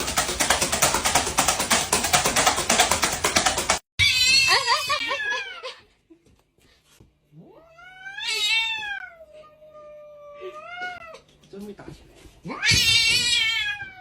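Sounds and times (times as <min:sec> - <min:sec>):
cats caterwauling: 0:04.0 - 0:05.8, 0:07.4 - 0:11.3, 0:12.4 - 0:14.0
cat yowling: 0:07.4 - 0:11.2, 0:12.5 - 0:14.0.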